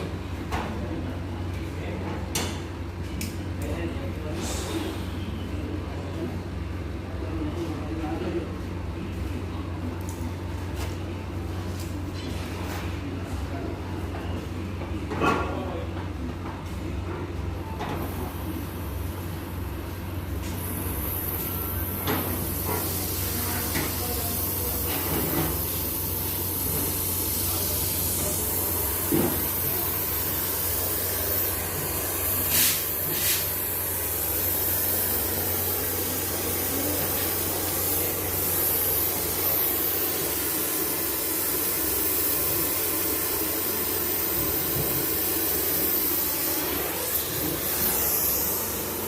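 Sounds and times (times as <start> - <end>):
welding arc hissing: 18.1 - 49.0
welding arc crackles: 20.6 - 49.0.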